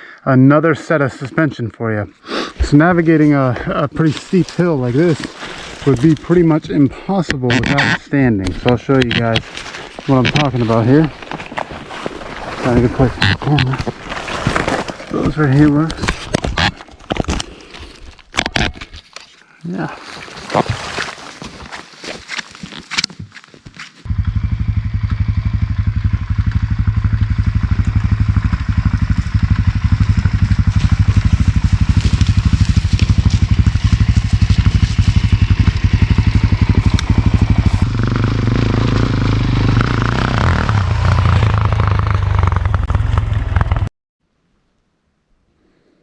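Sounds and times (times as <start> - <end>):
motorcycle engine running: 24.1 - 43.9.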